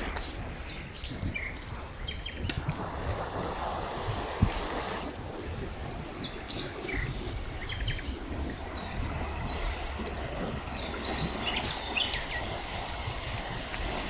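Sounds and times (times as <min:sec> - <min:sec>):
songbirds singing trilled phrases: 0:06.1 - 0:13.3.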